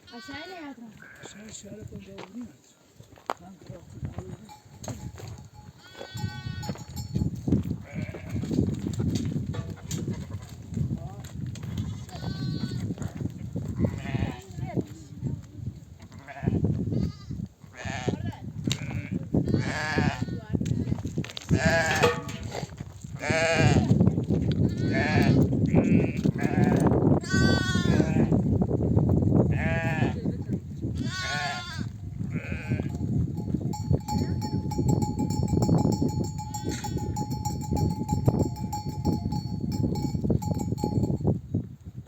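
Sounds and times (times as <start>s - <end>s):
sheep bleating: 0.1s - 1.5s, 5.8s - 6.8s, 7.8s - 8.4s, 11.7s - 12.8s, 16.2s - 20.4s, 23.2s - 23.9s, 24.6s - 28.3s, 29.5s - 30.2s, 31.0s - 35.3s.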